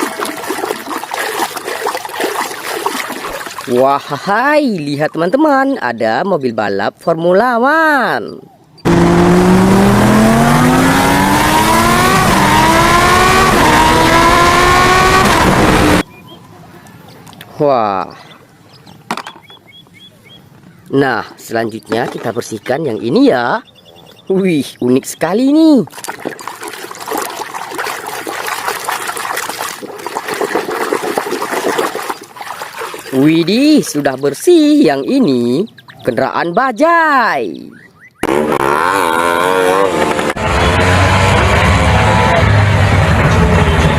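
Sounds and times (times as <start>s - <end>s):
water running and splashing: 0.0s - 4.3s, 25.8s - 34.8s
racing car engine accelerating: 8.8s - 16.1s, 38.2s - 43.9s.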